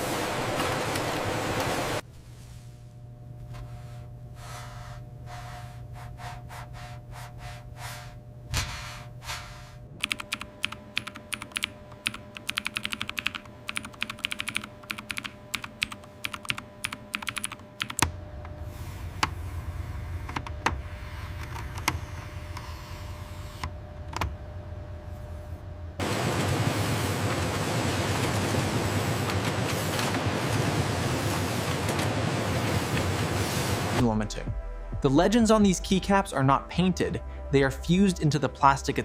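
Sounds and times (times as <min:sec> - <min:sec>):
low steady rumble: 0:02.0 - 0:10.0, 0:18.0 - 0:39.0
mechanical keyboard keys clacking: 0:10.0 - 0:18.1.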